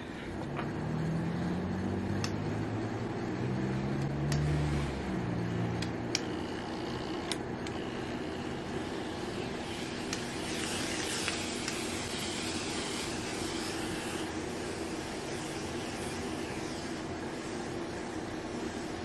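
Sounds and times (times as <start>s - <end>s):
hair steamer hum and hiss: 0.0s - 19.0s.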